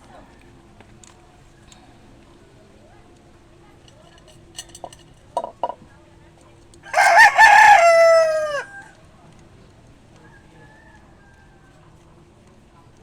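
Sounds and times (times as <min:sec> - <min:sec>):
rooster crowing: 0:06.9 - 0:09.0.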